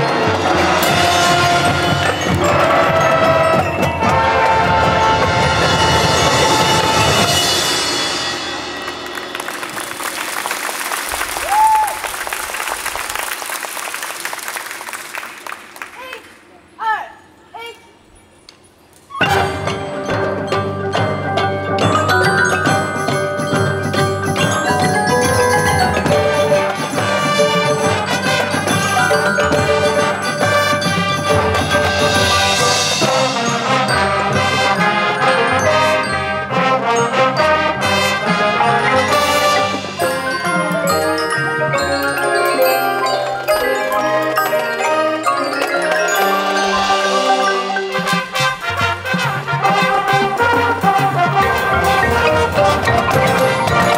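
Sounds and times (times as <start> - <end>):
marching band held chord: 0.0 - 11.2, 19.3 - 53.9
percussion strokes: 0.0 - 13.1, 18.0 - 53.9
high-pitched cheer: 8.8 - 13.4
audience applause: 8.8 - 16.2.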